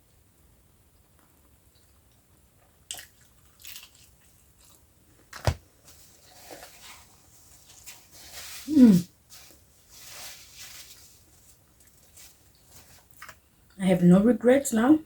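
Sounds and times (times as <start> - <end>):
crisp bites and chewing: 2.9 - 5.6.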